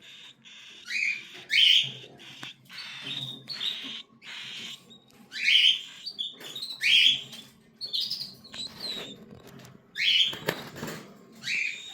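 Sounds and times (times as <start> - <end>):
chicks calling harshly: 0.0 - 7.2.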